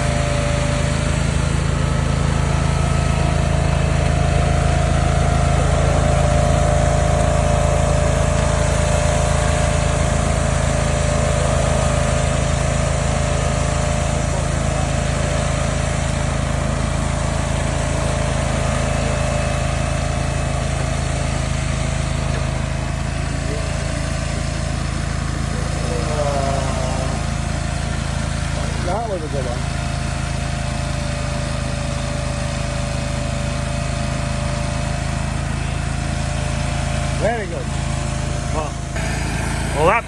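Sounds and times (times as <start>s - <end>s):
small petrol engine running: 0.0s - 40.0s
mechanical whine: 38.5s - 40.0s.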